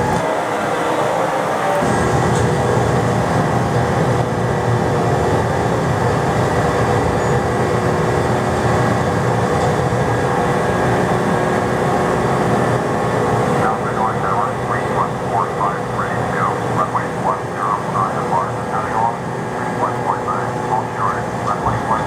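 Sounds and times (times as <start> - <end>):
jet engines running: 0.0 - 22.0.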